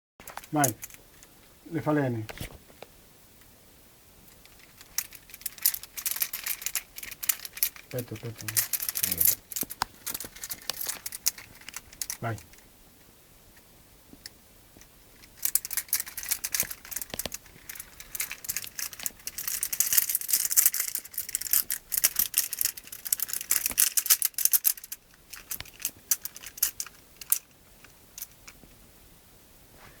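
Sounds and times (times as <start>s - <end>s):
fluttering wing clicks and rattles: 4.4s - 12.6s, 15.3s - 27.5s.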